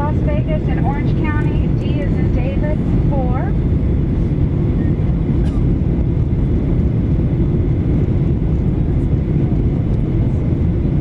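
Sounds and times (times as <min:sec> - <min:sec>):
faint steady hums: 0:00.0 - 0:07.5
airplane cabin rumble: 0:00.0 - 0:11.0.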